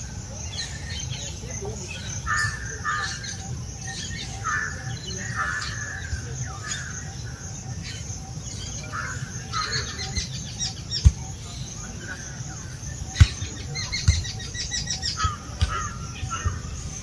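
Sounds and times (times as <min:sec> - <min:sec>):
harsh caw-like bird calls: 0:02.1 - 0:08.0, 0:08.7 - 0:10.8, 0:13.2 - 0:17.0.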